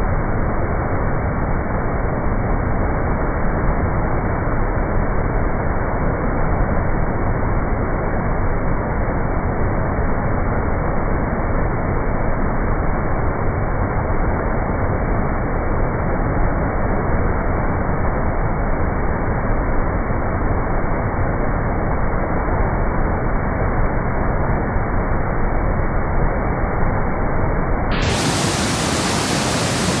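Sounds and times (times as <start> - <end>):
rushing water: 27.9 - 30.0.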